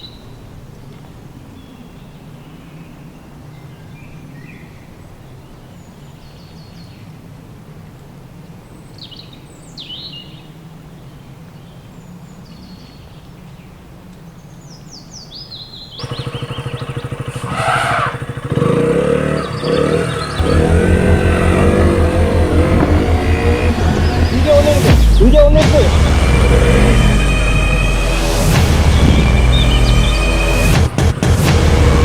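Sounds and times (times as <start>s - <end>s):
birds chirping: 8.7s - 32.0s
low engine hum: 16.0s - 32.0s
motorcycle engine pulsing: 16.0s - 32.0s.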